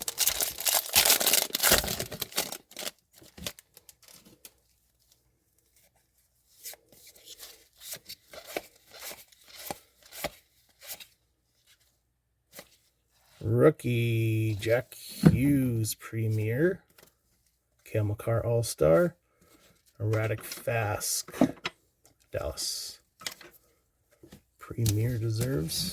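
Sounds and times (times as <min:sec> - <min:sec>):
wrapper tearing with crinkly rip: 0:00.0 - 0:04.2
cards clicking and rubbing: 0:06.6 - 0:11.1.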